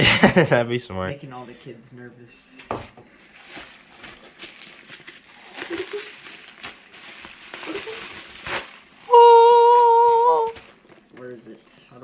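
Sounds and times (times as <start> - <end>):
cardboard box rustling and crinkling: 2.7 - 9.2, 9.8 - 11.3.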